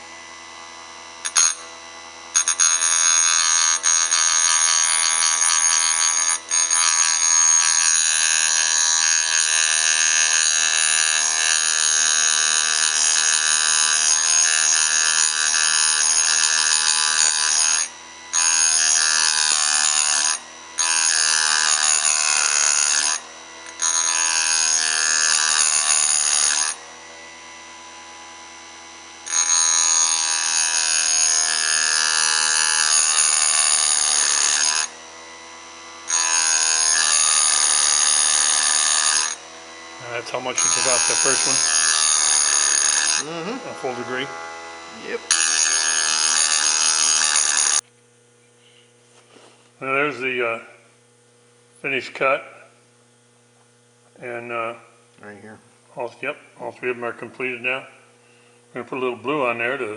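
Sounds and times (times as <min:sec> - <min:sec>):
grinder high-pitched whine on metal: 0:00.0 - 0:59.9
low motor hum: 0:42.6 - 0:45.6.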